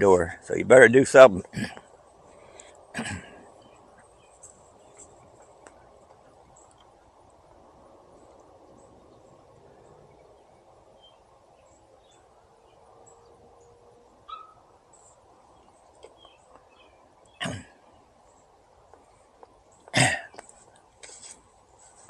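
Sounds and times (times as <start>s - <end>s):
small dog yip: 14.3s - 14.6s.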